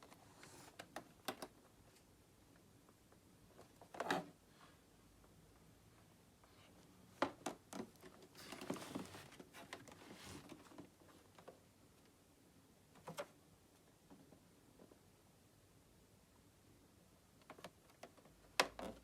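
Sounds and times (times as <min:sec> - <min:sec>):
rustling: 0:07.8 - 0:11.6.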